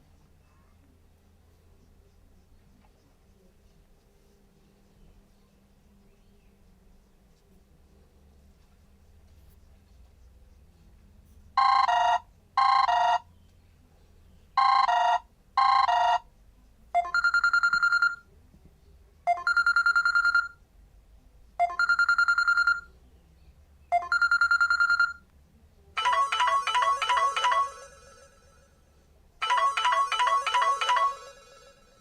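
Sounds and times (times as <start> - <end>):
musical ringtone: 11.6 - 13.2, 14.6 - 16.2, 21.6 - 22.9, 23.9 - 25.2, 26.0 - 32.0
trilling phone ring: 26.0 - 32.0.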